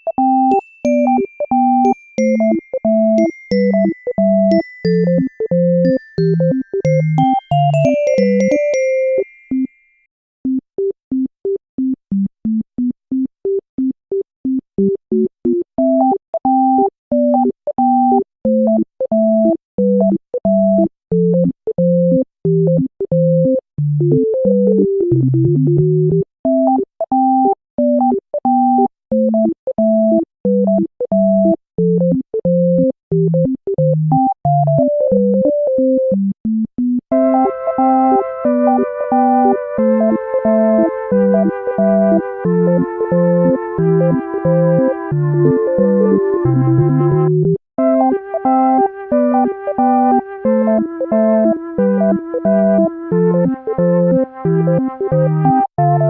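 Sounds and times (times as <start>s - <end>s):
bouncy synthesizer tune: 0.0s - 9.7s, 31.8s - 56.0s
bass line: 37.1s - 47.6s.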